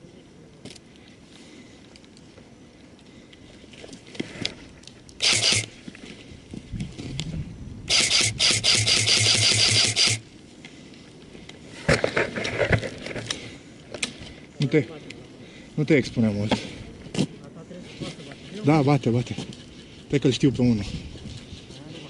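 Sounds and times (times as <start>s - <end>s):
airsoft gun firing full auto: 5.2s - 5.8s, 7.9s - 10.2s.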